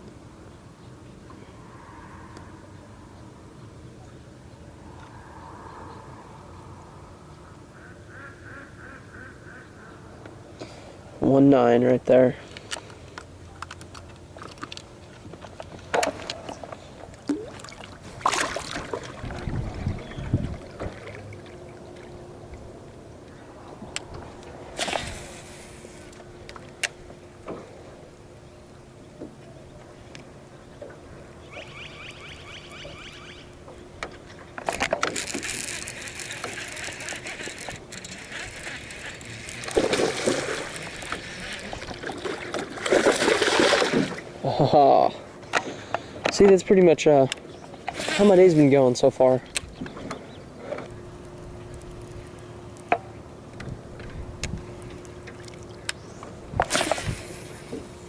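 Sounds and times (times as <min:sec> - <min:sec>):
steady low hum: 0:00.0 - 0:58.0
fish splashing in water: 0:17.2 - 0:22.2, 0:35.2 - 0:44.3.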